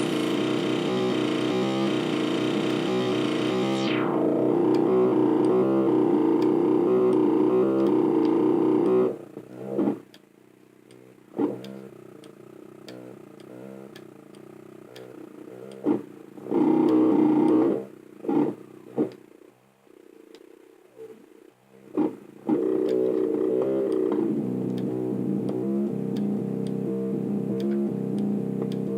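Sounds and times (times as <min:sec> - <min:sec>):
falling filter sweep: 0:00.0 - 0:09.2
pulsing synthesizer chords: 0:00.0 - 0:09.7, 0:22.3 - 0:28.9.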